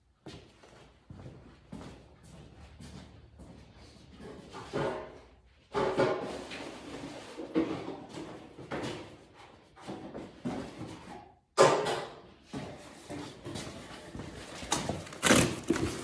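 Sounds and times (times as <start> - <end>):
knife slicing through cardboard: 14.9 - 16.0.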